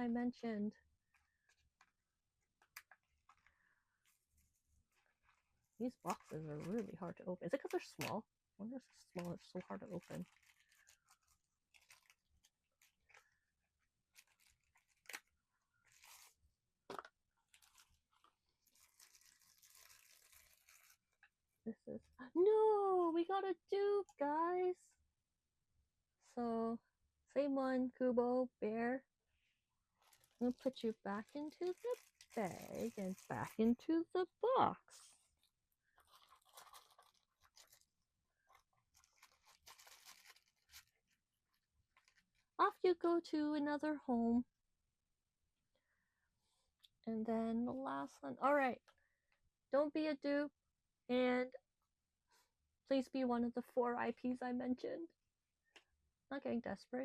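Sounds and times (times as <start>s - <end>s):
plastic bag crinkling: 8.9s - 13.4s, 14.0s - 16.4s, 17.0s - 21.3s, 30.0s - 33.8s, 35.9s - 41.2s, 41.9s - 42.5s
cardboard tearing and rustling: 18.6s - 21.0s, 31.6s - 33.7s, 38.9s - 40.9s.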